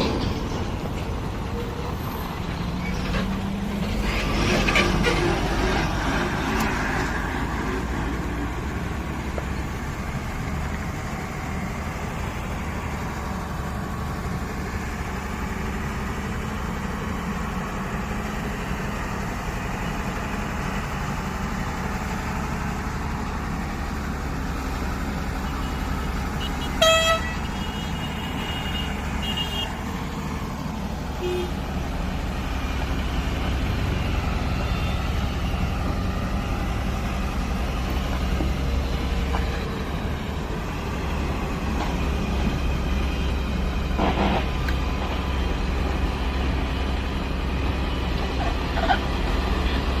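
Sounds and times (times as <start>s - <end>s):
excavator diesel engine running: 0.0s - 50.0s
horn toot: 26.6s - 27.8s.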